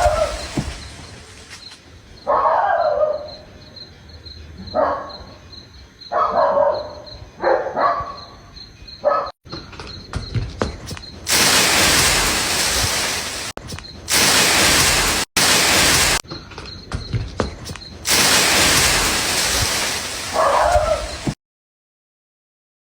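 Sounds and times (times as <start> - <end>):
dog barking: 0.0 - 0.6, 2.2 - 3.5, 4.6 - 5.4, 6.1 - 9.4, 20.2 - 21.4.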